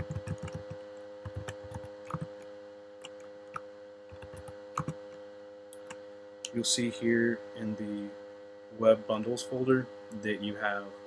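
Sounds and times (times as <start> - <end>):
keyboard keys clicking: 0.0 - 2.4, 3.0 - 5.0
steady electrical hum: 0.0 - 11.0.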